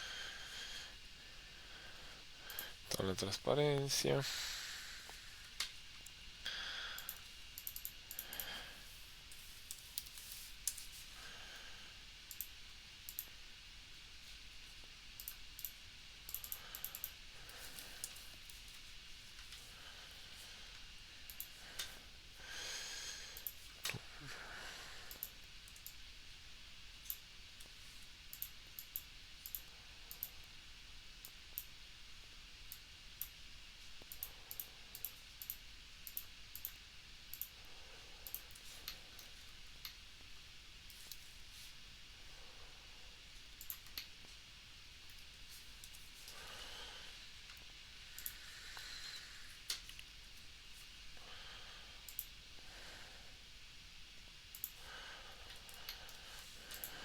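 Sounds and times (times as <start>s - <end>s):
low steady hiss: 0.0s - 57.0s
computer mouse and keyboard clicking: 6.9s - 10.9s, 12.3s - 13.4s, 15.2s - 19.6s, 20.7s - 22.0s, 23.4s - 24.0s, 25.1s - 26.0s, 27.0s - 30.5s, 34.0s - 37.6s, 38.2s - 40.0s, 40.9s - 41.3s, 43.6s - 44.2s, 47.5s - 48.4s, 52.1s - 52.4s, 54.5s - 54.8s, 55.5s - 57.0s.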